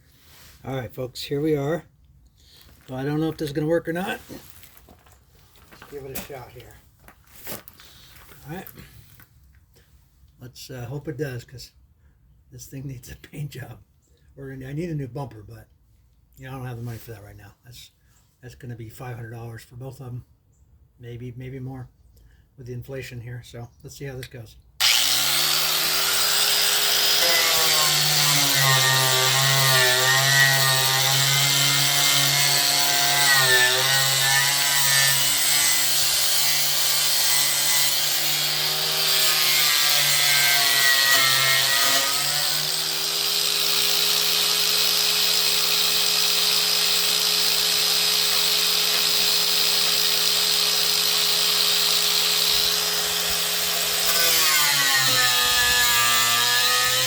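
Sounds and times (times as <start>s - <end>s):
electric grinder grinding metal: 24.8s - 57.0s.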